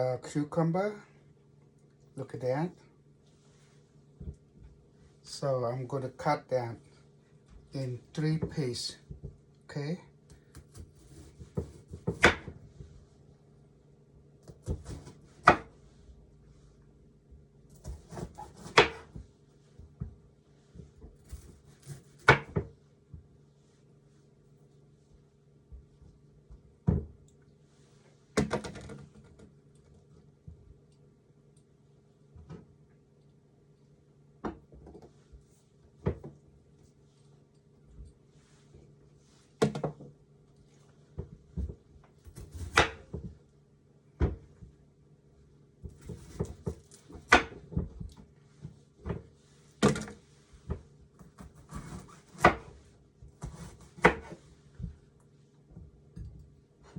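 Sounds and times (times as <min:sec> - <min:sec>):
faint steady hum: 0:00.0 - 0:56.9
knife chopping on cutting board: 0:10.5 - 0:12.6, 0:14.5 - 0:15.7, 0:17.8 - 0:19.2, 0:21.2 - 0:22.7, 0:42.3 - 0:43.2, 0:50.7 - 0:52.8, 0:53.4 - 0:54.4.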